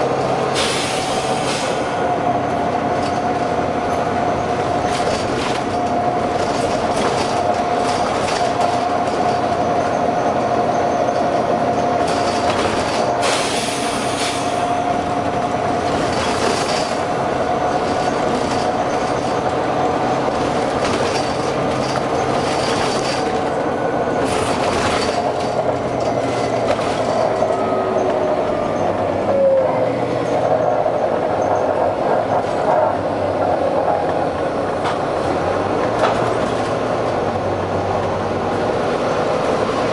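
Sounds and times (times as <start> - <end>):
bus engine running with whine: 0.0 - 39.9
short air hisses: 0.6 - 1.8.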